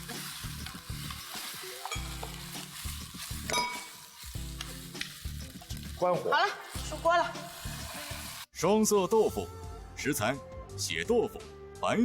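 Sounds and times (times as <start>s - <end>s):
food sizzling in a pan: 0.0s - 8.5s.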